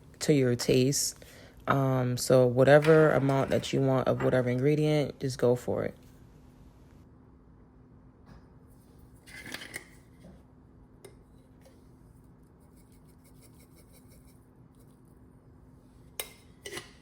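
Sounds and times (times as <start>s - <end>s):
low steady hum: 0.0s - 17.0s
kitchen scrape or rustle: 8.7s - 10.4s.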